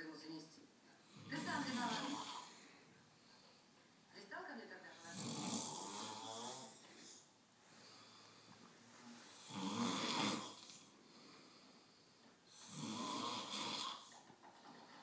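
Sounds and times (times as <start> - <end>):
pig snoring: 1.2 - 2.6, 5.0 - 6.8, 9.3 - 10.9, 12.5 - 14.3.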